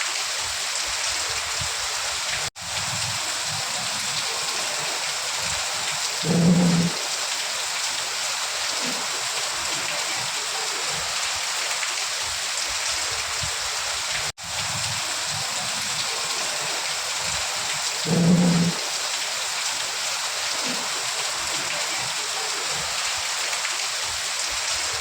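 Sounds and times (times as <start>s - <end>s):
heavy rainfall: 0.0s - 25.0s.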